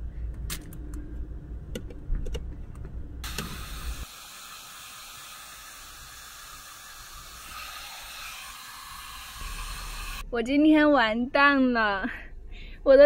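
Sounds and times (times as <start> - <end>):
hair dryer blowing: 3.2 - 10.2.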